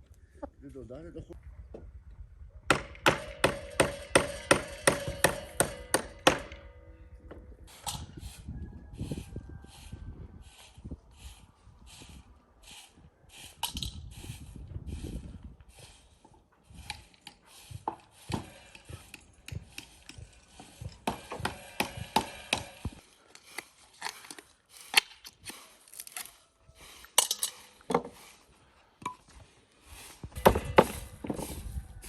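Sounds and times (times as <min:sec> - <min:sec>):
knocks and clinks of hard objects: 0:30.4 - 0:31.6.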